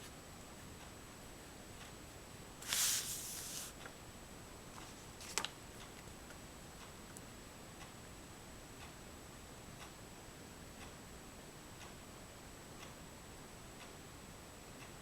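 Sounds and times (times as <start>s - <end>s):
oil pastel scraping on paper: 2.6s - 3.8s.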